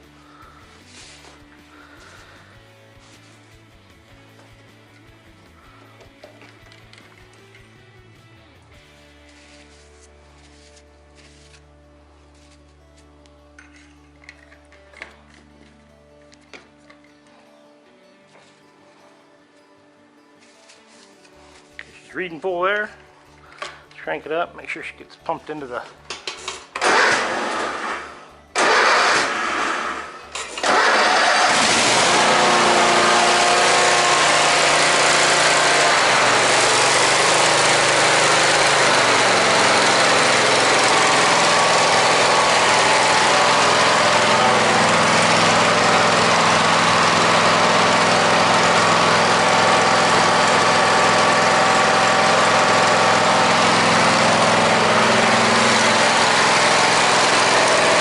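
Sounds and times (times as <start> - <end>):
mower engine running: 0.0 - 3.8, 26.5 - 58.0
engine starter cranking: 26.1 - 58.0.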